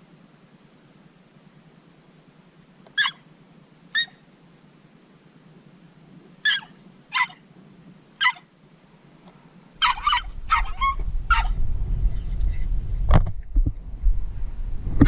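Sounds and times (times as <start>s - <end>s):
dog yipping: 3.0s - 3.2s, 3.9s - 4.2s, 6.4s - 7.4s, 8.2s - 8.5s, 9.8s - 11.6s
wind rumble on microphone: 9.8s - 15.0s.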